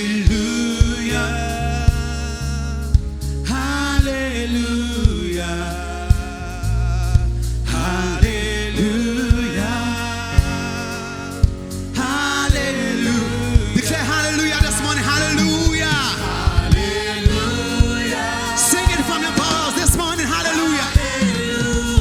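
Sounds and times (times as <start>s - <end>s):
gospel singing: 0.0s - 22.0s
sustained chords: 11.2s - 22.0s
steady beat: 11.4s - 22.0s.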